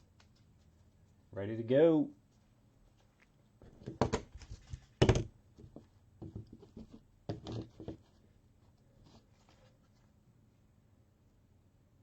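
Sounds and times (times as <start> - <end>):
soft taps and rustling: 2.3 - 10.0.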